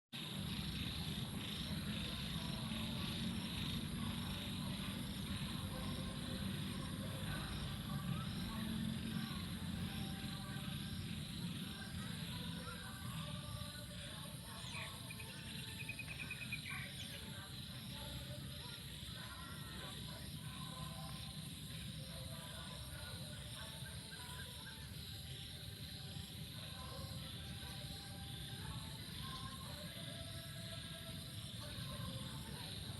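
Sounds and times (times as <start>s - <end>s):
insects chirping chorus: 0.2s - 32.9s
rapid chirping call: 14.2s - 21.7s.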